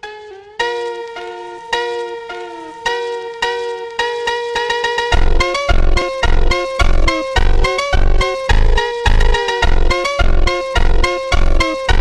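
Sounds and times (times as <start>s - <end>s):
plucked melody background music: 0.0s - 12.0s.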